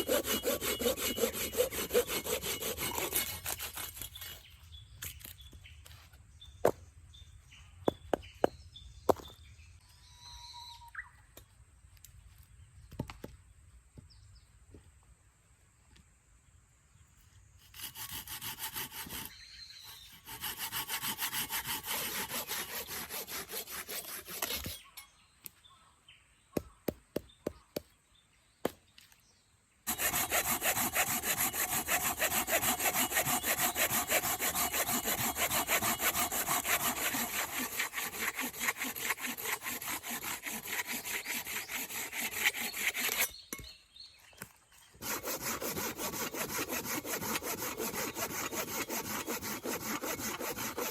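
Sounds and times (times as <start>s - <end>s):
hand saw cutting firewood: 0.0s - 5.4s, 17.6s - 25.0s, 29.9s - 43.7s, 44.9s - 50.9s.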